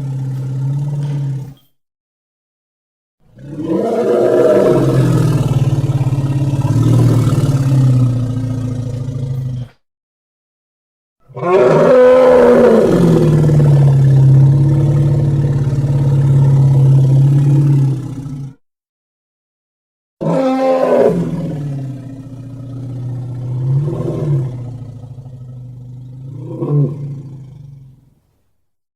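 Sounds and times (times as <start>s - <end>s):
creature roaring: 3.4s - 8.2s, 11.3s - 18.6s, 20.2s - 21.9s.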